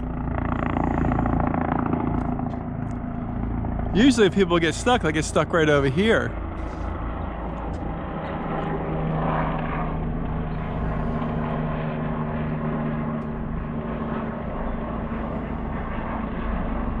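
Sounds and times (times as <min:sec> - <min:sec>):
helicopter rotor rumbling: 0:00.0 - 0:17.0.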